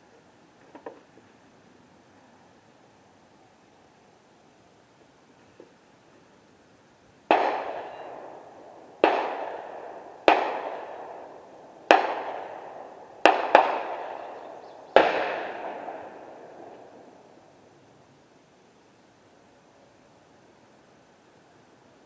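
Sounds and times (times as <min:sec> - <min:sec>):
gunshots with echoing tail: 0:07.3 - 0:17.0.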